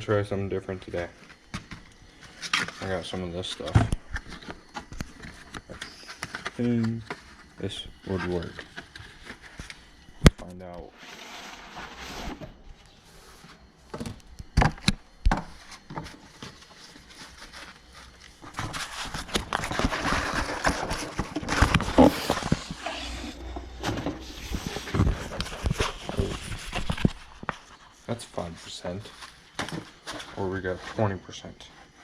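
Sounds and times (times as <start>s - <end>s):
rustling: 10.9s - 13.7s, 15.5s - 28.2s.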